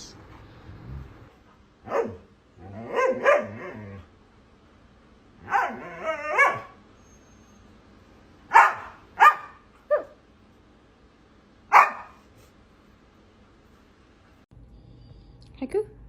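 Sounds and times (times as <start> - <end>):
dog barking: 1.8 - 3.6, 5.4 - 6.8, 8.5 - 10.2, 11.7 - 12.2.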